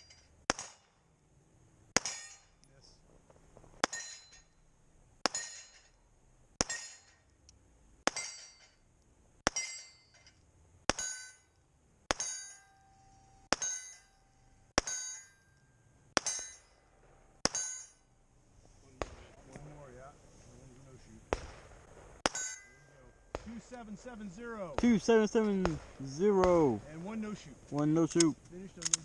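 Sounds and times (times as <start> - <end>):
pistol shots: 0.5 - 0.9, 2.0 - 2.6, 19.0 - 19.4, 21.3 - 22.6, 23.3 - 24.1, 24.7 - 26.8
steel target plate clanging: 2.0 - 2.7, 3.8 - 4.6, 5.2 - 6.0, 6.6 - 7.3, 8.1 - 8.8, 9.4 - 18.2, 22.1 - 26.7.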